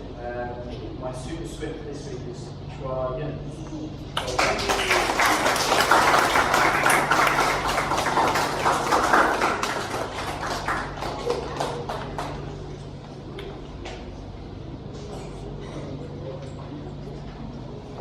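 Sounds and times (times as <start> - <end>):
children clapping: 4.2 - 12.8.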